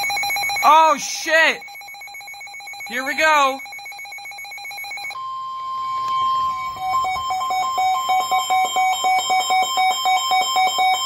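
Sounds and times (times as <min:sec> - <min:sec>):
fast two-pitch beeping: 0:00.0 - 0:05.0
alert radio alarm tone: 0:00.0 - 0:11.0.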